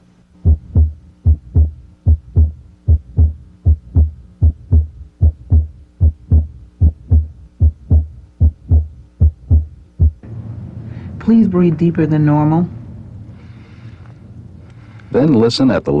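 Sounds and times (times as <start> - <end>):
heartbeat through stethoscope: 0.4 - 10.2.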